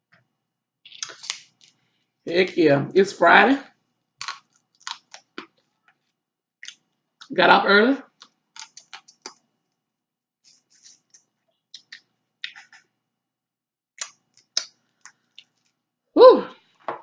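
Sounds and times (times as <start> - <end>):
eating clicks and wet smacks: 4.2 - 5.6, 6.6 - 7.0, 8.1 - 9.4, 10.9 - 12.9, 14.0 - 15.7.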